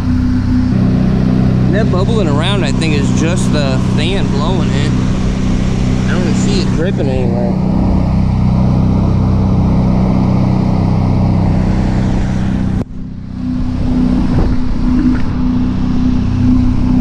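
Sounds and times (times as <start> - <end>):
rotary engine idling: 0.0 - 17.0.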